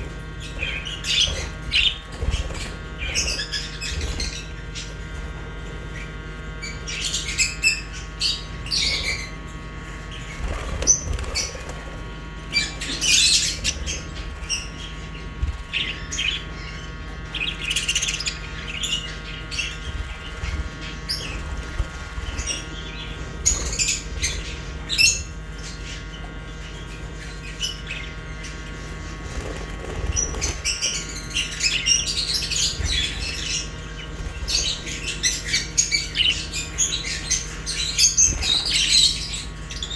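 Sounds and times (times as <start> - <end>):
steady low hum: 0.0 - 39.9
small parrots chirping: 30.0 - 39.9.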